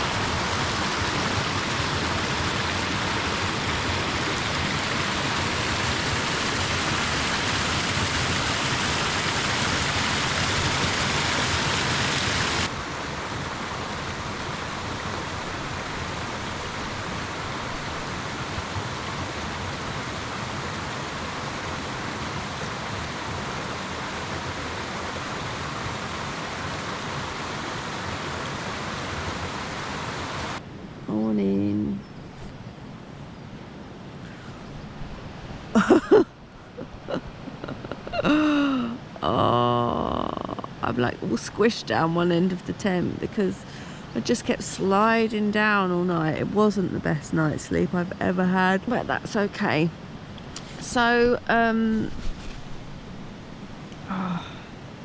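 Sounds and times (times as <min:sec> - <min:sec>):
waterfall and stream rushing: 0:00.0 - 0:31.8.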